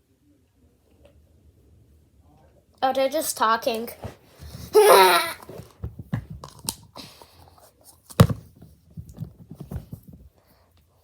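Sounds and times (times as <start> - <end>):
toys being handled: 3.6 - 10.3
child's vocal sound: 4.7 - 5.5.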